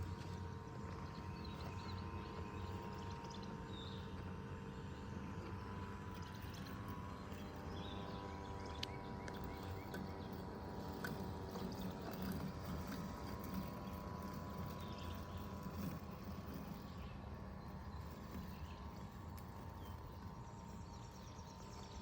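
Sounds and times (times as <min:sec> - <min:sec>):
electric motor whine: 0:00.0 - 0:22.0
low hum: 0:00.0 - 0:22.0.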